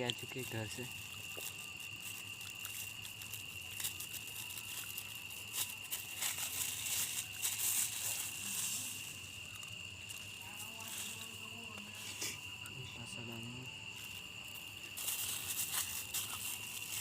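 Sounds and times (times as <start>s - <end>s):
plastic packet crinkling: 0.0s - 10.3s, 14.9s - 17.0s
crickets chirring: 0.0s - 17.0s.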